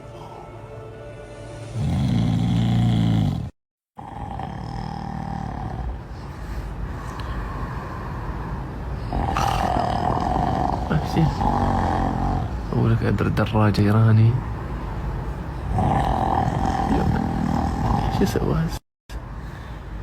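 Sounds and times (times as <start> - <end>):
loud snoring: 1.7 - 6.2, 9.0 - 12.7, 15.7 - 18.4.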